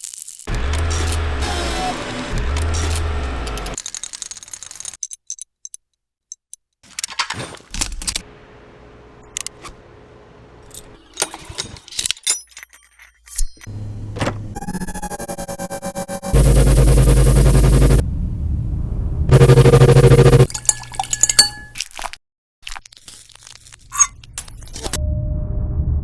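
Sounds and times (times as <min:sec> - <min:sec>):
faint steady hum: 0:16.0 - 0:18.0, 0:19.3 - 0:20.5.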